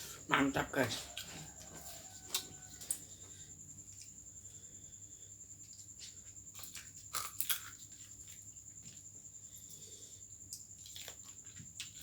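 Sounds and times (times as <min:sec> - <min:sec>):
chewing with bones crunching: 0:05.6 - 0:09.8, 0:10.5 - 0:12.0.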